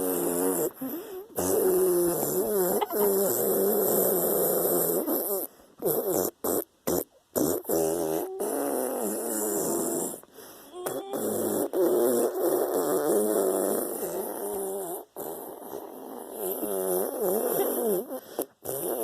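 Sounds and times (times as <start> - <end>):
long fart sounds: 0.0 - 19.0.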